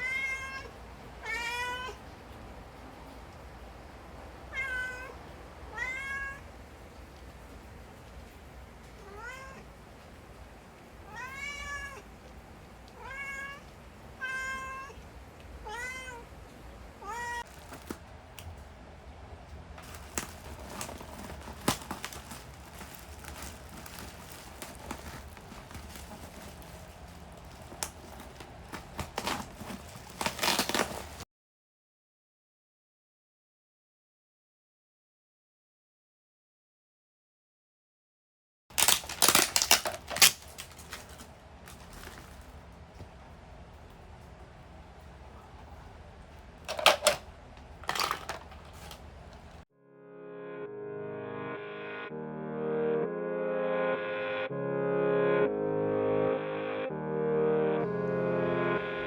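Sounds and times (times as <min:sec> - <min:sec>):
cat meowing: 0:00.0 - 0:02.0, 0:04.5 - 0:06.5, 0:09.0 - 0:09.7, 0:11.0 - 0:12.2, 0:12.9 - 0:16.3, 0:17.0 - 0:17.6.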